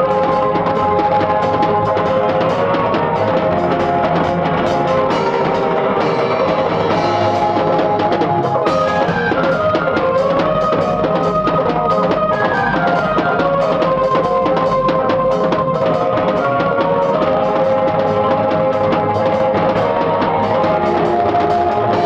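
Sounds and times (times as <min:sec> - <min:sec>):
drum and percussion beat: 0:00.0 - 0:22.0
live band music without singing: 0:00.0 - 0:22.0.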